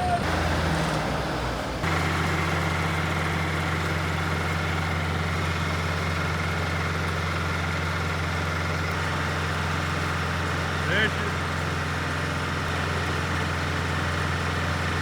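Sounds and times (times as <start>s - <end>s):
excavator engine idling: 0.0s - 15.0s.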